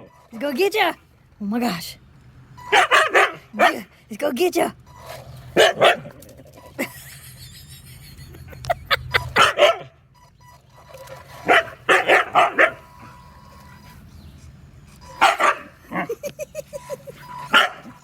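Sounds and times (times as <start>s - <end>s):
dog barking: 2.7s - 3.9s, 5.6s - 6.2s, 9.4s - 9.9s, 11.4s - 12.9s, 15.2s - 16.1s, 17.5s - 18.0s.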